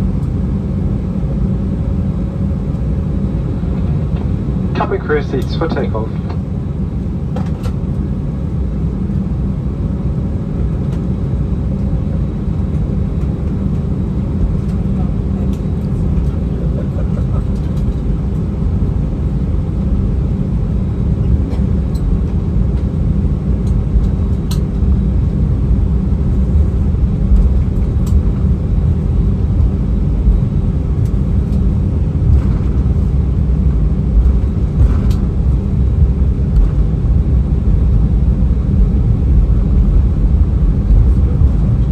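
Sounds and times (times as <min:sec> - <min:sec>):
jet engines rumbling in cabin: 0:00.0 - 0:41.9.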